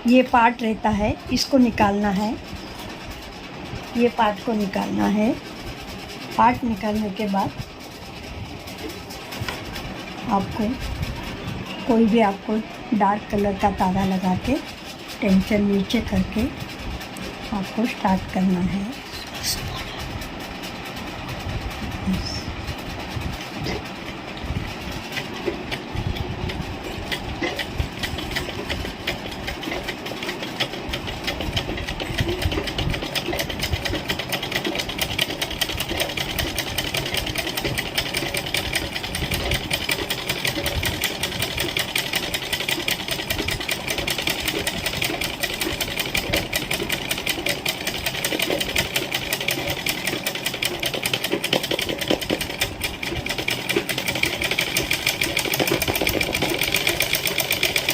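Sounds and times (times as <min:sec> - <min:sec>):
sewing machine stitching: 0:19.9 - 0:57.9.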